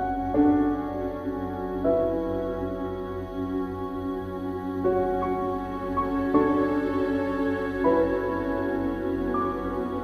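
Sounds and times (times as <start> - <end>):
calm new-age music: 0.0 - 10.0.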